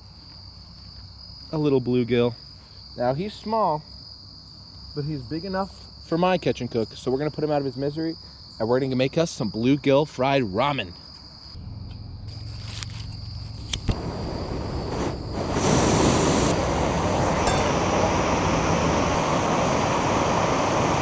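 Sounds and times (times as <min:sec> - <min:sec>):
insects trilling: 0:00.0 - 0:19.3
sharp igniter clicks: 0:11.9 - 0:14.1
gas camp stove burner hissing: 0:13.4 - 0:21.0.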